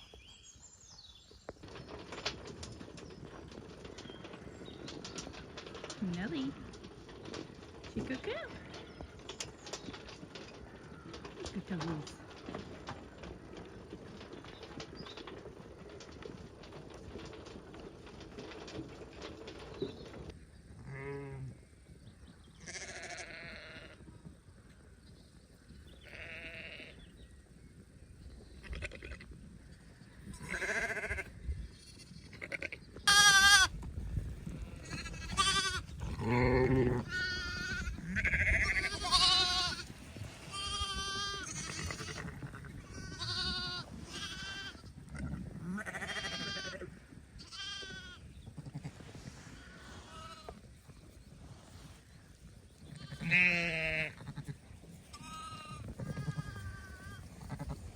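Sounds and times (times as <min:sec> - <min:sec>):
sheep bleating: 0:22.6 - 0:24.0, 0:34.8 - 0:39.9, 0:43.0 - 0:48.9, 0:52.9 - 0:57.8.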